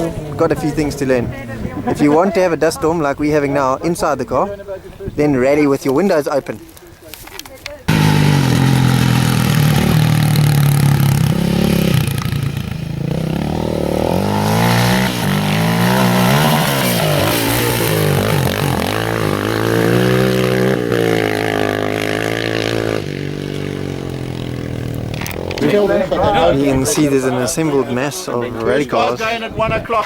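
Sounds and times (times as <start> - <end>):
rally car engine revving: 7.9 - 26.5.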